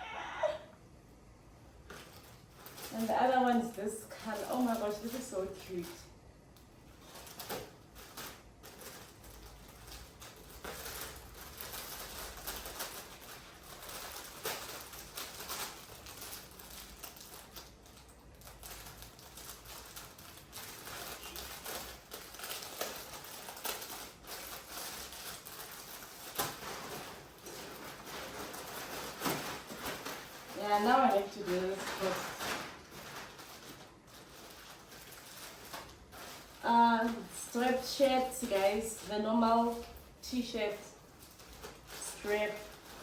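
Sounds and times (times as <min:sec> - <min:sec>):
plastic packaging rustling: 0:01.6 - 0:43.0
clothing being handled: 0:25.2 - 0:43.0.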